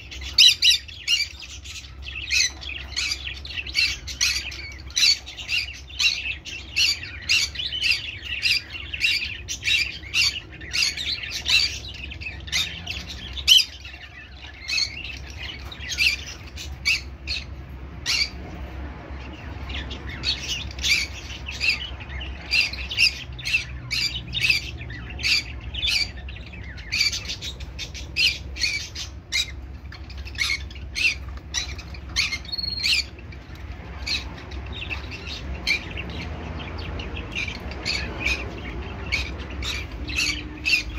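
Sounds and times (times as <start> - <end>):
parrot squawking: 0.0 - 40.9.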